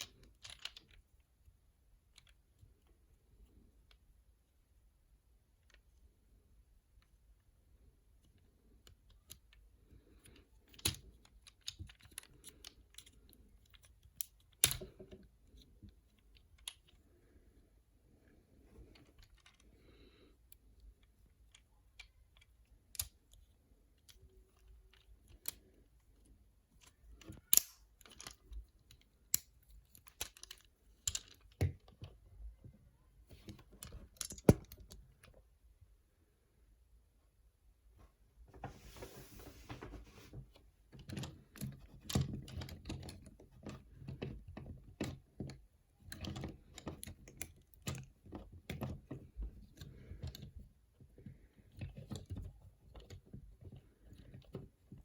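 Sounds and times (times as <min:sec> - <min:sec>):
plastic toy parts clicking: 0:08.2 - 0:17.2, 0:20.4 - 0:32.3, 0:41.0 - 0:55.0.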